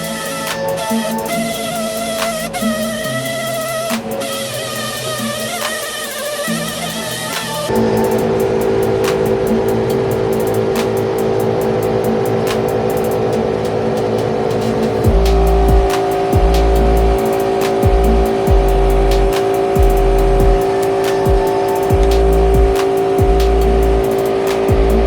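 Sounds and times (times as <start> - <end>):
heavy bass notes: 0.0 - 25.0
held synth tones: 0.0 - 25.0
kick drums: 15.0 - 19.2, 19.8 - 25.0.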